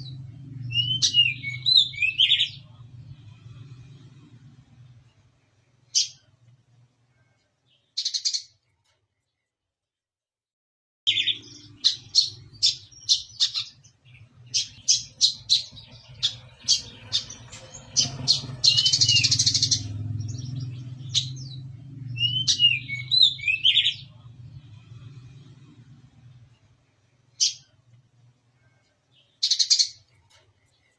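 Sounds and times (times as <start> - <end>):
bird chirping and trilling: 0.0 - 2.8, 5.8 - 6.3, 7.7 - 8.6, 11.1 - 24.3, 27.3 - 27.8, 28.6 - 30.9
low steady hum: 0.0 - 7.9, 11.3 - 30.9.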